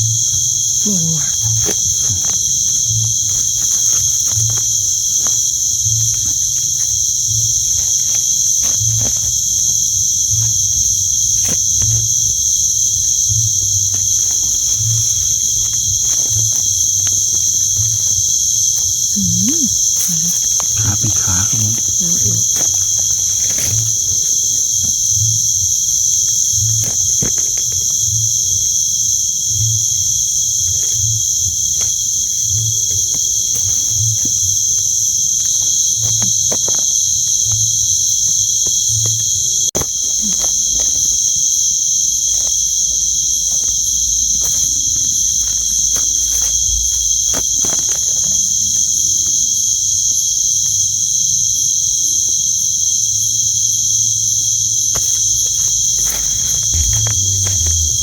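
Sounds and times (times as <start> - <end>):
soft rustles and clicks: 0.0 - 28.4, 54.8 - 58.0
crickets trilling: 0.0 - 58.0
low regular pulse: 55.4 - 58.0.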